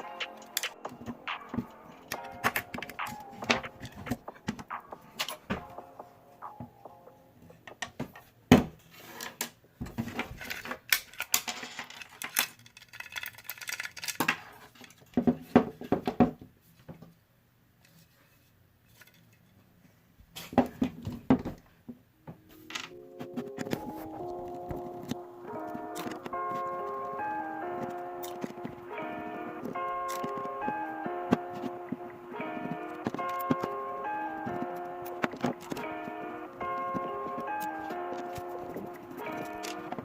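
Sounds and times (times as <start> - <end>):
metal and plastic parts clicking: 10.1 - 15.2.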